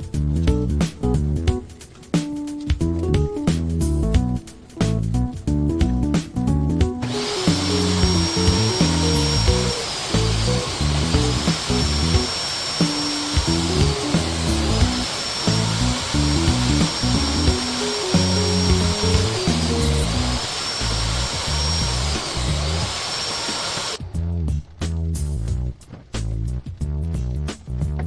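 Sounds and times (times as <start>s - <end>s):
background music with steady beat: 0.0s - 28.0s
power tool whining: 7.0s - 24.0s.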